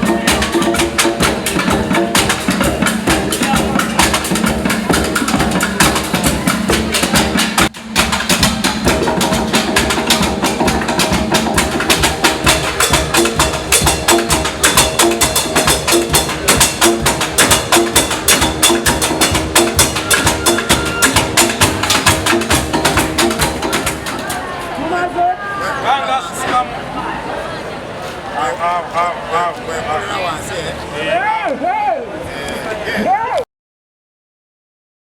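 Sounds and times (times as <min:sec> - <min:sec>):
fast percussion knocking beat: 0:00.0 - 0:24.4.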